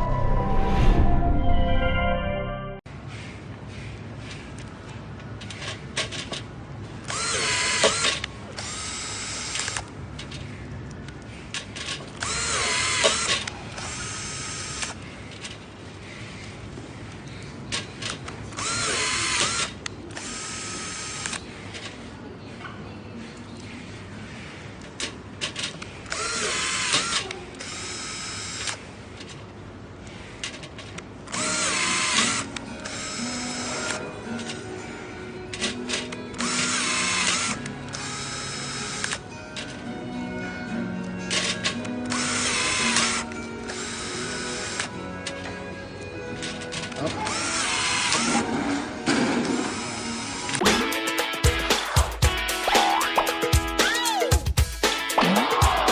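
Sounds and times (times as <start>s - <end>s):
cordless drill motor under load: 7.1s - 9.7s, 12.2s - 15.0s, 18.6s - 21.4s, 26.1s - 28.8s, 31.4s - 34.0s, 36.4s - 39.2s, 42.1s - 44.9s, 47.2s - 48.8s.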